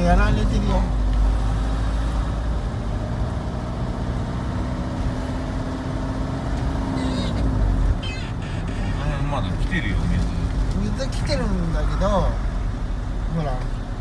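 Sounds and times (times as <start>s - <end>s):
car engine drone: 0.0s - 14.0s.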